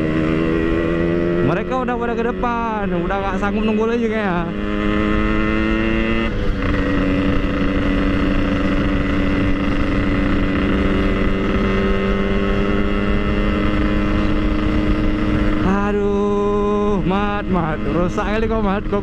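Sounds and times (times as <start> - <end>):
two-stroke motorcycle engine: 0.0 - 19.0.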